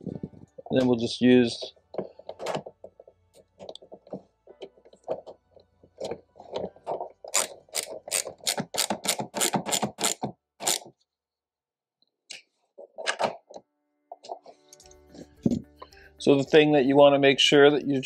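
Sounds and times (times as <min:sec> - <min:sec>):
ratchet wrench clicking: 0:07.3 - 0:10.8.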